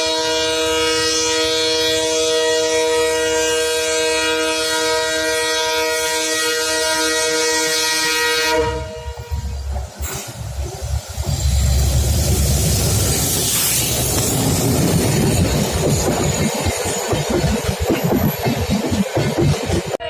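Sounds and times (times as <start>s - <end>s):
locomotive air horn blast: 0.0s - 9.6s.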